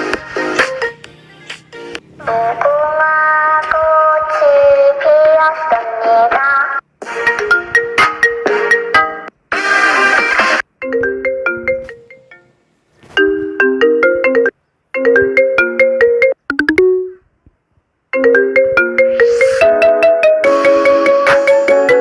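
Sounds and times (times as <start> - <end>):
marimba-like phone ringtones: 7.2 - 9.3, 10.8 - 12.5, 13.2 - 17.2, 18.2 - 22.0.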